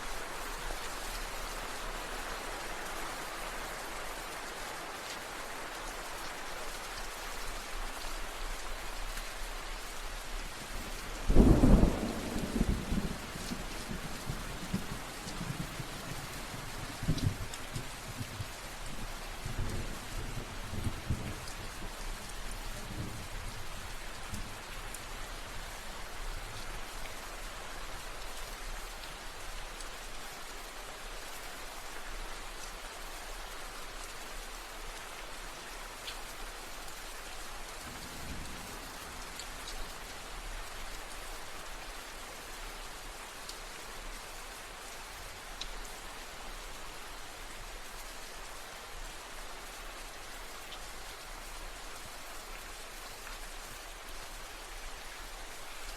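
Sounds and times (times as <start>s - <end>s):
steady rain: 0.0s - 55.9s
distant thunder rumbles: 11.3s - 17.5s.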